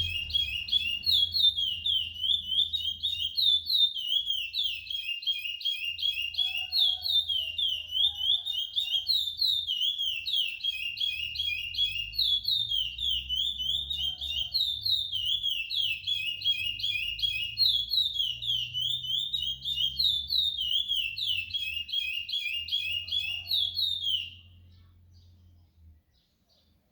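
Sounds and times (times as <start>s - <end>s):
finch singing high whistled notes: 0.0s - 24.6s.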